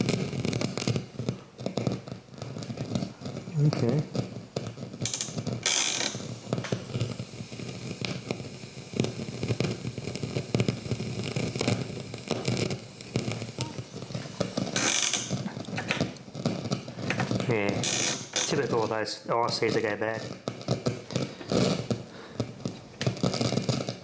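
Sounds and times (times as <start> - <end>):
burst of hiss: 0.0 - 24.0
crackling and clicking from amplifier: 0.0 - 24.0.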